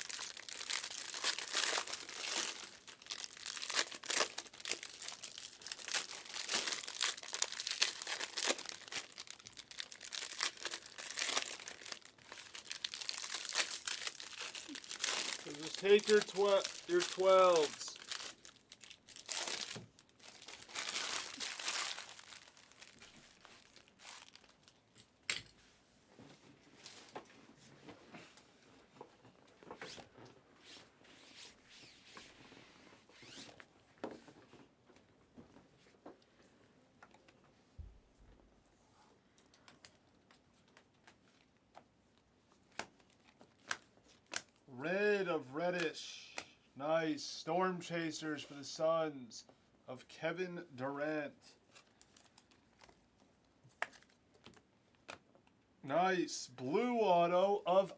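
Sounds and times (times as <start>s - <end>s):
card pack wrappers crinkling: 0.0s - 24.8s.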